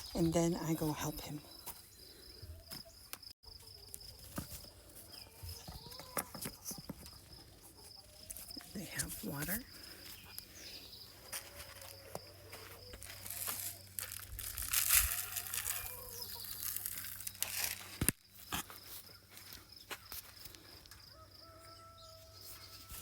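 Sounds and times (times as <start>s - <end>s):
chickens clucking: 1.6s - 13.9s
rustling: 8.2s - 19.6s.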